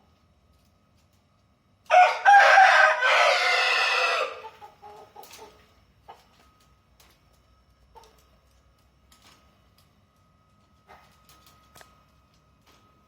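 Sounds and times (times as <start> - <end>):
rooster crowing: 1.9 - 4.6
soft short rooster calls: 1.9 - 4.6.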